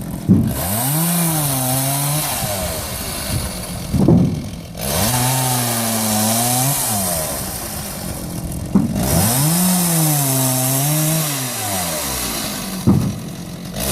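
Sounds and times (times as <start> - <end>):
chainsaw cutting wood: 0.0 - 13.9.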